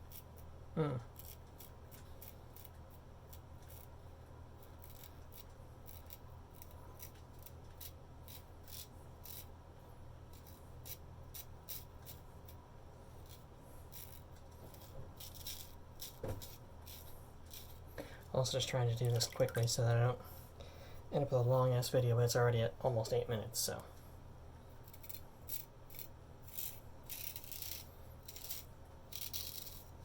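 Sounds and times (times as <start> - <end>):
razor scraping stubble: 0.0 - 4.0, 4.6 - 9.5, 10.3 - 19.7, 24.8 - 30.0.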